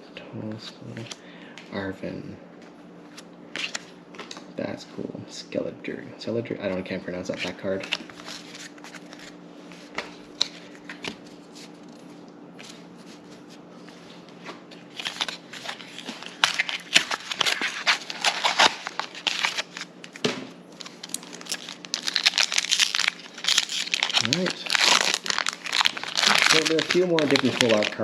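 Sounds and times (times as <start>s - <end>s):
trading cards being flipped: 14.4s - 28.0s.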